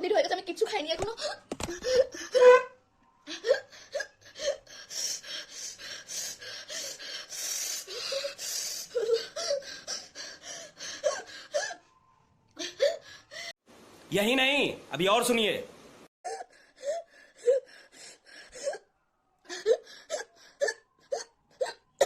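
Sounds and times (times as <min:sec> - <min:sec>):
woman gasping and hiccupping: 0:01.1 - 0:02.4.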